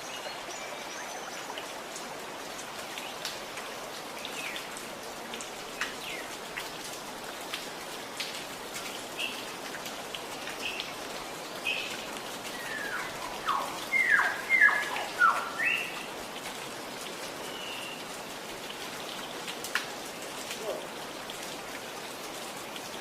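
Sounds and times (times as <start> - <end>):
water gurgling and dripping: 1.5 - 23.0
songbird chirping and whistling: 12.6 - 16.0.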